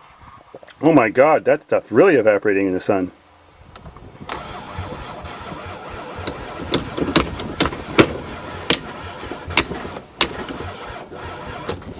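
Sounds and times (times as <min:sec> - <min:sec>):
van engine rumbling: 0:03.3 - 0:11.9
engine sharp pops: 0:03.7 - 0:11.9.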